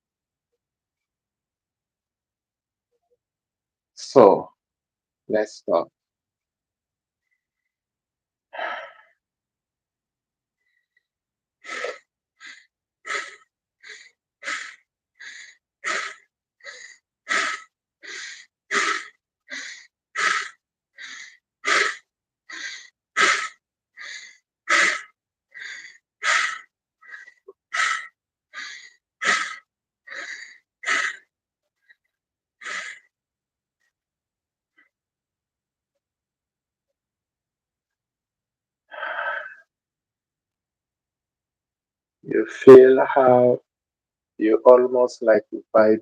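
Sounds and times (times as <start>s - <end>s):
person breathing rapidly: 11.7s - 31.2s, 38.9s - 39.6s.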